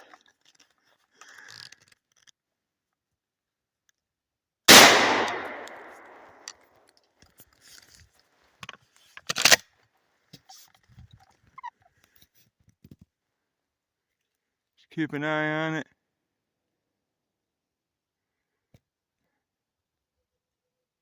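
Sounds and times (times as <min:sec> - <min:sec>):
loud gunshot echoing: 0:04.7 - 0:06.3
sharp clicks: 0:04.7 - 0:06.6.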